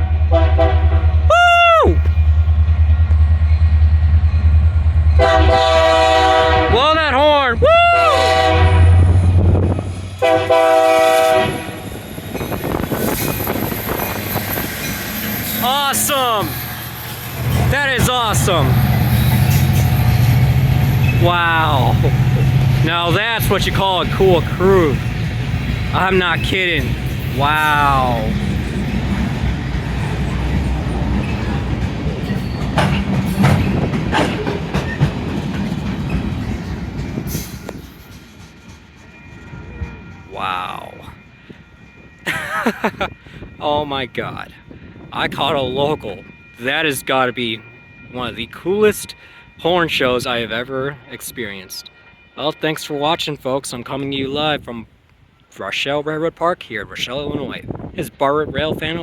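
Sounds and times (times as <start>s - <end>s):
locomotive air horn chord: 0.0s - 1.2s, 5.2s - 7.1s, 7.9s - 9.4s, 10.2s - 12.0s
train wheels rumbling on rails: 0.0s - 46.6s.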